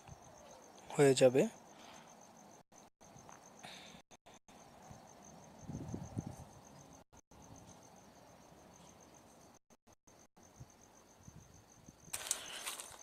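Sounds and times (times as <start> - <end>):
faint pulsing insect trill: 0.0 - 13.0.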